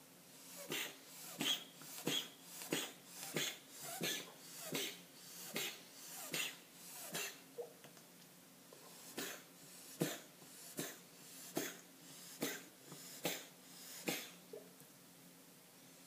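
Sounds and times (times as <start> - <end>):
cat drawing breath: 0.4 - 7.4, 8.9 - 14.4
cat sneezing: 0.6 - 7.4, 9.0 - 14.4.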